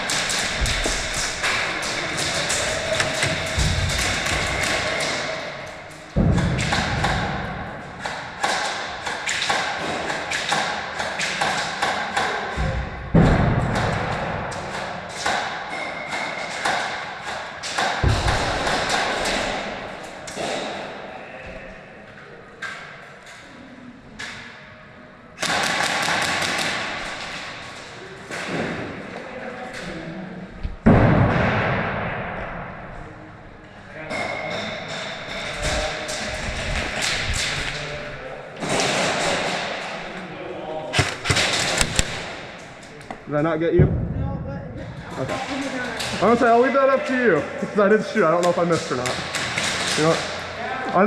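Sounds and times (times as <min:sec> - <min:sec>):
pellets striking walls: 0:00.0 - 0:20.9
airsoft guns firing: 0:25.4 - 0:27.0, 0:41.0 - 0:42.4.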